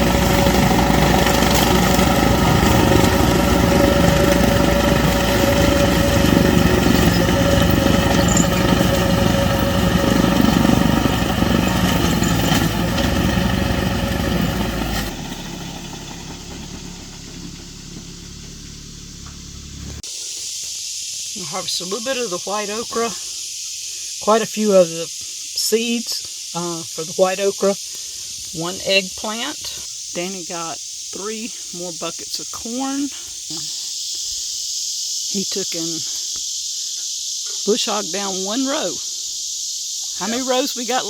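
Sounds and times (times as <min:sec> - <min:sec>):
rotary cutter whine: 0:00.0 - 0:20.0
tractor engine running: 0:00.0 - 0:20.0.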